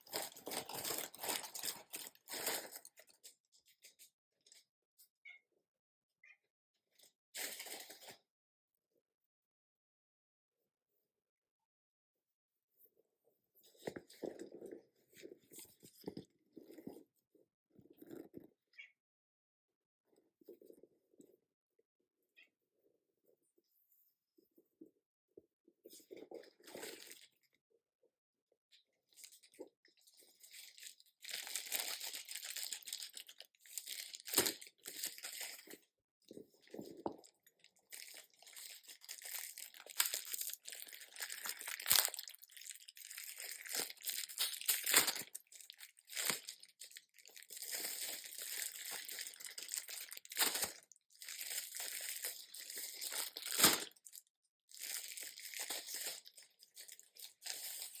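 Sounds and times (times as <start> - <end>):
packaging crinkling and rustling: 0.0 - 3.3, 30.4 - 35.8, 36.6 - 58.0.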